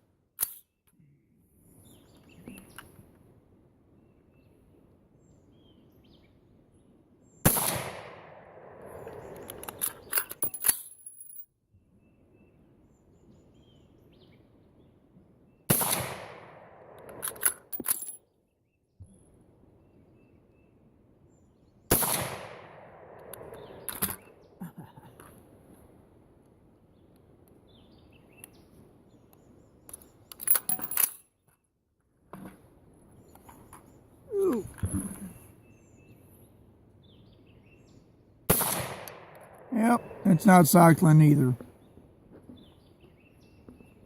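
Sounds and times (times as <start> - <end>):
metallic clicks of rifle action: 0.4 - 0.7, 9.0 - 11.4, 17.0 - 18.2, 29.9 - 31.3
rifle shots with echo: 7.4 - 9.5, 15.7 - 17.4, 21.9 - 23.9, 38.5 - 40.6.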